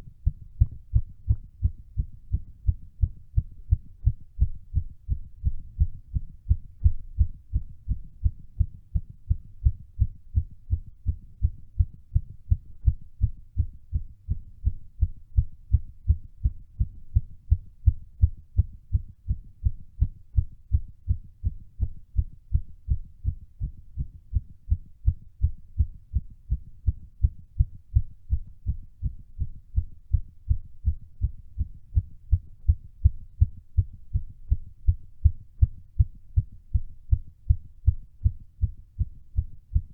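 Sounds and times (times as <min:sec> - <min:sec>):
fast heartbeat thumps: 0:00.0 - 0:39.9.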